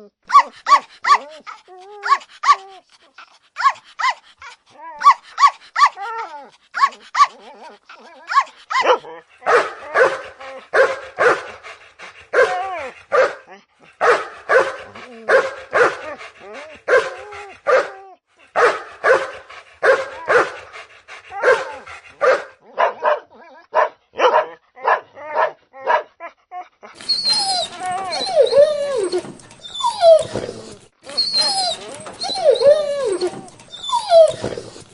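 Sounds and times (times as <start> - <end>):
dog barking: 8.8 - 10.2, 10.8 - 11.5, 12.4 - 13.4, 14.0 - 16.0, 18.6 - 20.6, 21.4 - 26.1.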